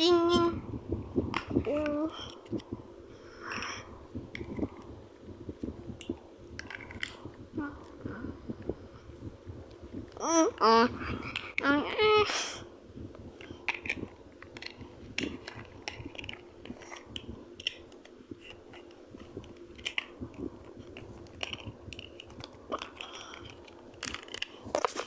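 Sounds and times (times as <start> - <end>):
faint steady hum: 0.0 - 25.0
plastic bricks clicking: 6.0 - 7.3, 13.4 - 25.0.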